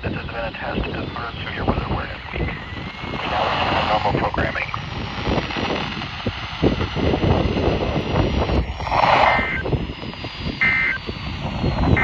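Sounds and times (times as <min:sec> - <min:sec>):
wind buffeting microphone: 0:00.0 - 0:12.0
electronic beep: 0:09.2 - 0:09.7, 0:10.5 - 0:11.2.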